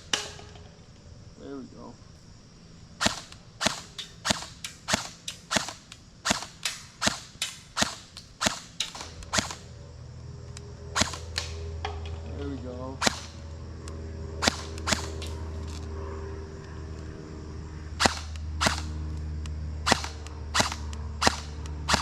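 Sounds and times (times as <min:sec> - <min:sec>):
airsoft rifle shots: 0:00.0 - 0:00.7, 0:03.0 - 0:09.8, 0:10.9 - 0:12.3, 0:13.0 - 0:13.4, 0:14.4 - 0:15.8, 0:18.0 - 0:19.1, 0:19.8 - 0:22.0.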